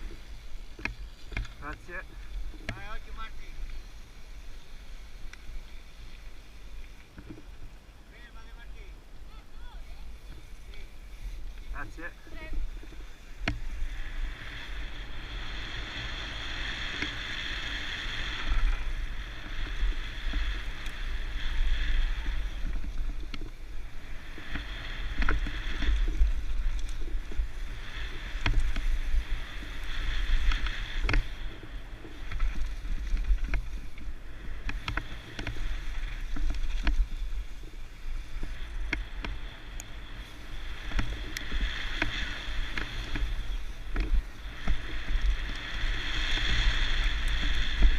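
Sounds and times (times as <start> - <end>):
bike rumble: 0.0 - 47.9
bike clicks and knocks: 0.7 - 2.9, 24.5 - 27.4, 28.4 - 29.0, 30.4 - 31.4, 32.0 - 37.2, 40.8 - 46.6
wind on microphone: 9.7 - 47.9.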